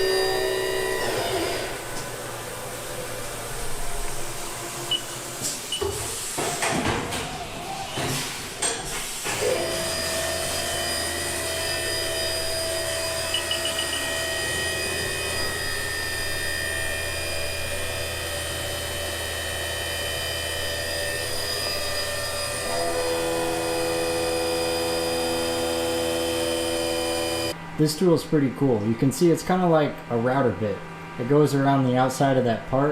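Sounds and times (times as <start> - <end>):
milling machine whine: 0.0 - 6.4, 9.2 - 27.6.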